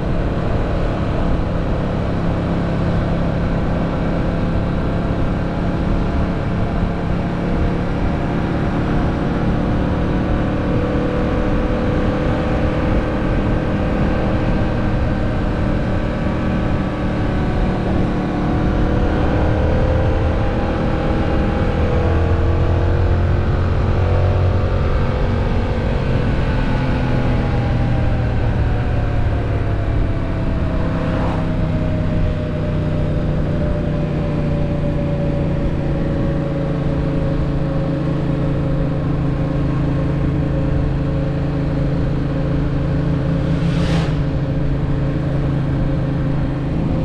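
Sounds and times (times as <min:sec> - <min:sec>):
steady rush of noise: 0:28.5 - 0:32.8, 0:41.3 - 0:47.0.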